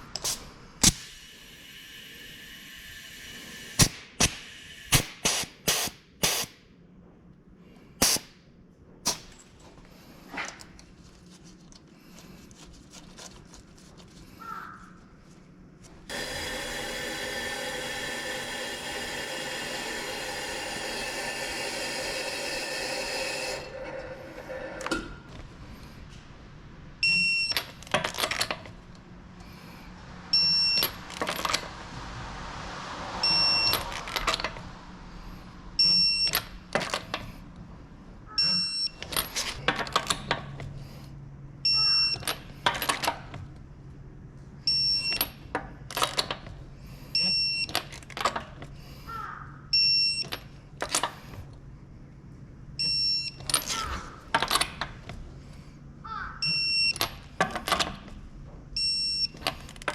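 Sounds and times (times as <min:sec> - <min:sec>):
short electronic beeps: 0:27.0 - 0:27.6, 0:30.3 - 0:30.8, 0:33.2 - 0:33.8, 0:35.8 - 0:36.4, 0:38.4 - 0:39.0, 0:41.7 - 0:42.2, 0:44.7 - 0:45.2, 0:47.2 - 0:47.7, 0:49.8 - 0:50.3, 0:52.8 - 0:53.5, 0:56.4 - 0:57.0, 0:58.8 - 0:59.4.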